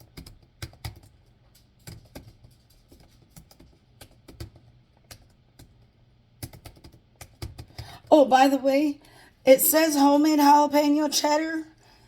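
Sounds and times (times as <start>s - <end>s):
computer keyboard typing: 0.0s - 8.0s.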